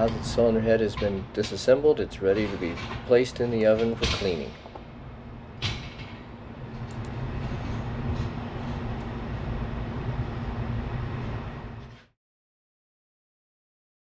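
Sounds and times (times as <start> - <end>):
machine running with hum: 0.0 - 12.1
sharp clunk: 3.8 - 4.9, 5.6 - 6.3.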